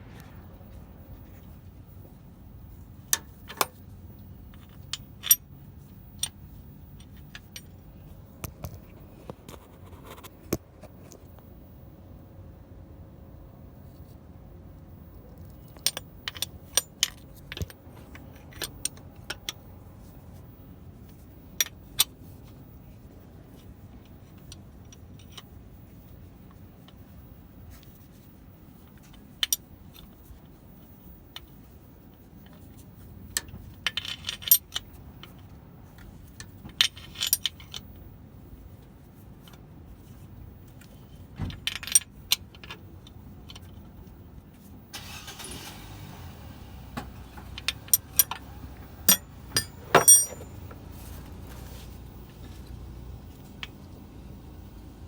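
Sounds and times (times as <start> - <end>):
light metallic clinks: 49.1 - 50.8.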